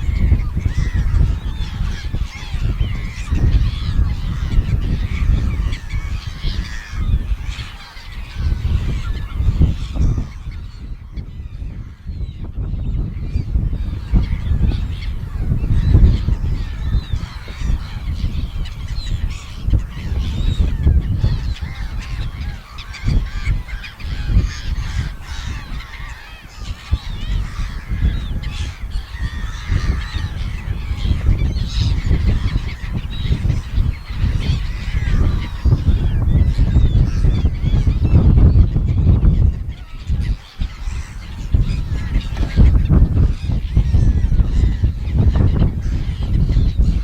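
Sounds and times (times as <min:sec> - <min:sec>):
seagulls calling: 0:00.0 - 0:47.0.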